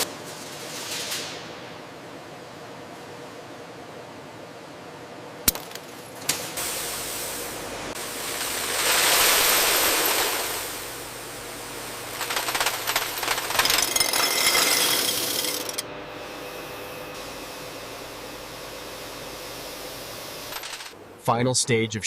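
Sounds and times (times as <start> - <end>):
machinery hissing: 8.0 - 11.0
rattling clatter: 12.2 - 15.8.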